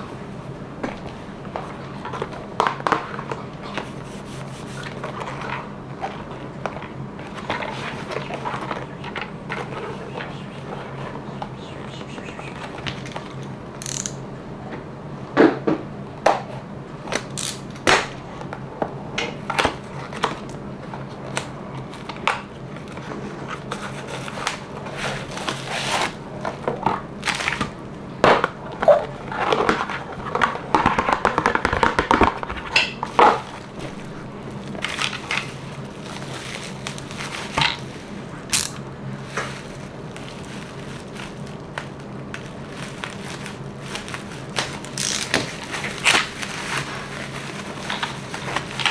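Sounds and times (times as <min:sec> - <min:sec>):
packaging crinkling: 0:28.8 - 0:48.9.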